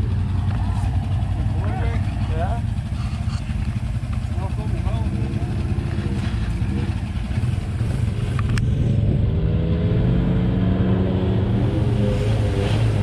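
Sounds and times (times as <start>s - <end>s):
off-road vehicle engine accelerating: 0.0s - 13.0s.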